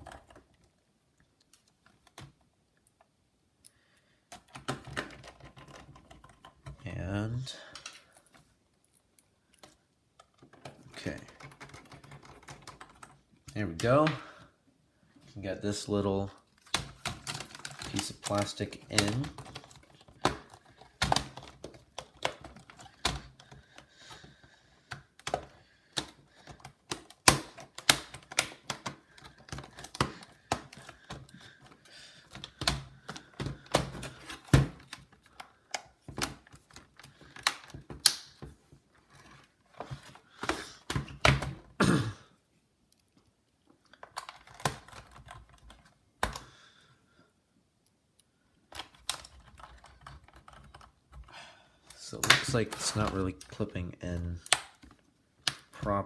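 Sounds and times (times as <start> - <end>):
plastic clicks and snaps: 24.9 - 38.5, 51.9 - 56.0.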